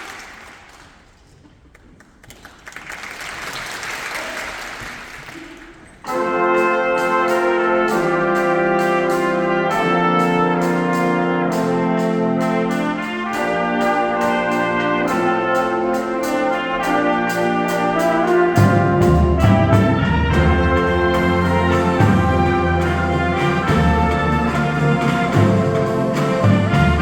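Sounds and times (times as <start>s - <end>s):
marching band brass chords: 5.3s - 27.0s
low brass bass line: 6.1s - 27.0s.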